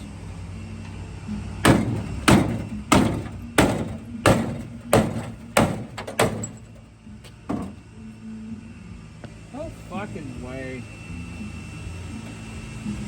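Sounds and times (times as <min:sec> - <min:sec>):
hammer beating on steel: 0:01.6 - 0:06.7.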